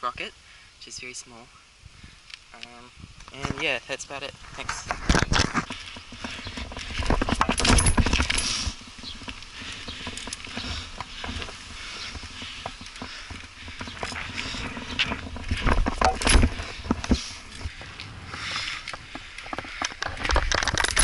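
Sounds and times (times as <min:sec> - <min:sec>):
bike rattling and clattering: 0:04.7 - 0:21.0
bike thumping: 0:05.3 - 0:21.0.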